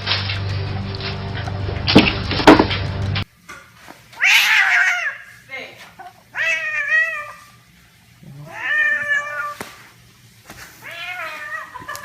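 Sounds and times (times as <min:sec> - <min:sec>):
cat meowing: 0:04.2 - 0:05.2, 0:06.4 - 0:07.4, 0:08.4 - 0:09.6, 0:10.8 - 0:11.9.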